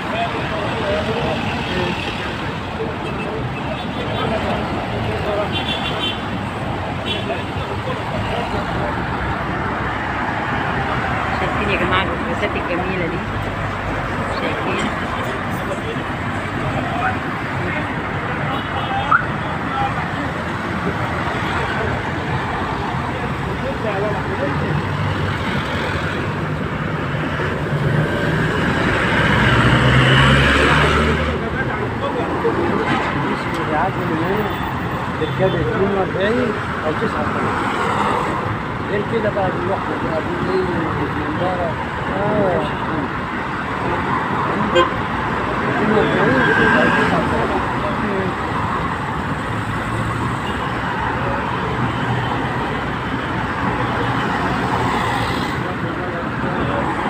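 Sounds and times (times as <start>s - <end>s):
street traffic: 0.0s - 57.0s
tyres on the road: 0.0s - 57.0s.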